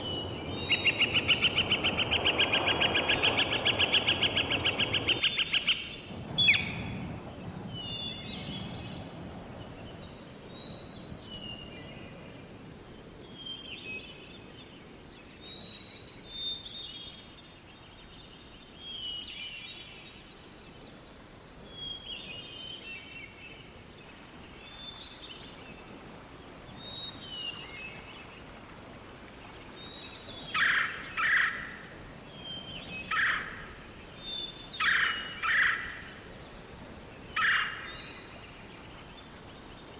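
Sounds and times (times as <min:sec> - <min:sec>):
birds calling: 0:00.0 - 0:06.8, 0:32.5 - 0:33.8, 0:34.7 - 0:36.4, 0:37.0 - 0:38.8
harsh bird calls: 0:00.0 - 0:06.8, 0:33.0 - 0:33.8, 0:34.8 - 0:36.1, 0:37.3 - 0:38.2
steady background hiss: 0:00.0 - 0:39.9.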